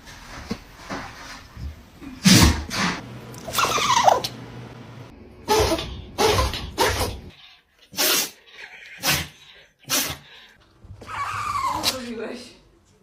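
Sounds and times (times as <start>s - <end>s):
dog sneezing: 5.5s - 7.3s, 7.9s - 8.4s, 9.0s - 10.3s.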